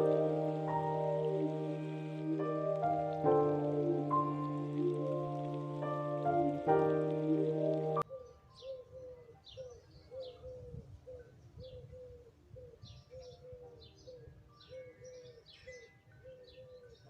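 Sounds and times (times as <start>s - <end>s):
sparrows chirping: 12.9s - 17.0s.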